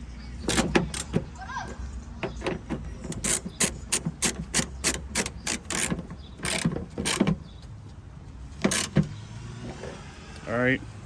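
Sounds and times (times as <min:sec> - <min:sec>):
ratchet wrench clicking: 0:00.4 - 0:01.2, 0:03.0 - 0:07.3, 0:08.7 - 0:09.0.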